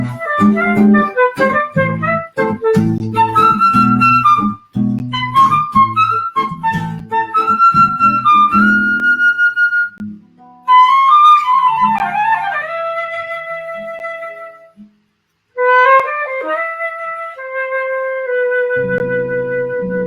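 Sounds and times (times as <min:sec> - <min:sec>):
flute playing slow melody: 0:00.0 - 0:10.0, 0:10.7 - 0:14.8, 0:15.6 - 0:20.0
low musical accompaniment: 0:00.0 - 0:12.9, 0:18.8 - 0:20.0.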